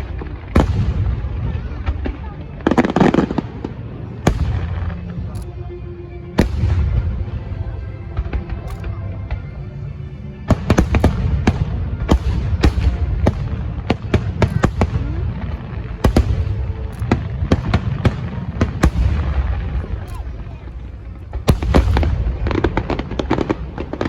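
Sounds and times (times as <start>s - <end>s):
low rumble of fireworks: 0.0s - 24.0s
sharp firework bangs: 21.3s - 24.0s.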